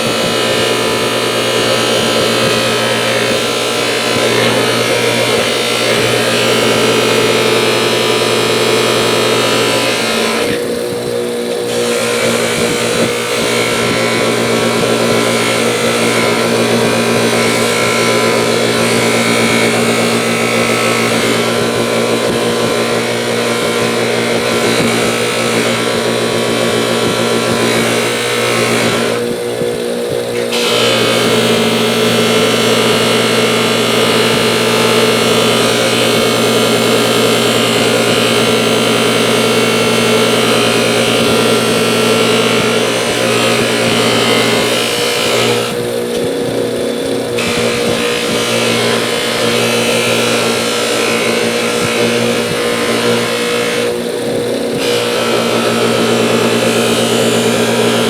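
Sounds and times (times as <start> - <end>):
metal hissing on buffing wheel: 0.0 - 58.0
polishing wheel motor hum: 0.0 - 58.0.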